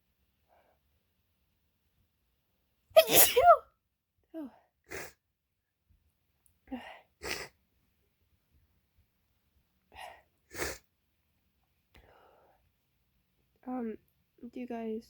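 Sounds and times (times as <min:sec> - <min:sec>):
woman sneezing: 0:03.0 - 0:03.6.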